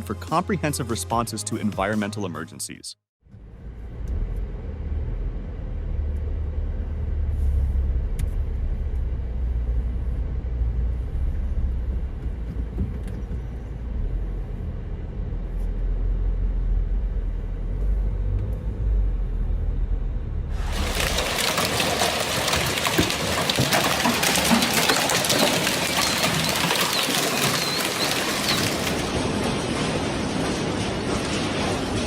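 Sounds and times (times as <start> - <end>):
deep rumble: 3.3 - 22.3.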